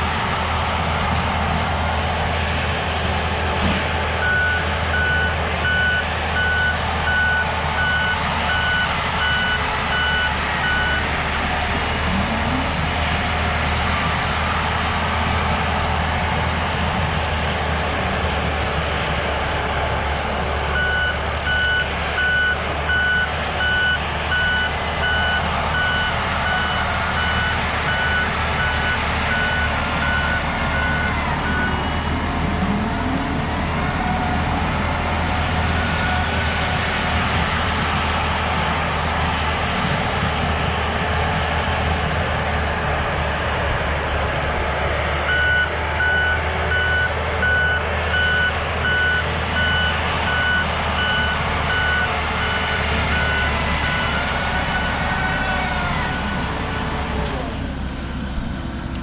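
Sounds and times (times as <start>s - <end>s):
excavator diesel engine and hydraulics: 0.0s - 59.0s
travel alarm beeping: 4.2s - 11.1s, 20.8s - 31.9s, 45.3s - 55.0s.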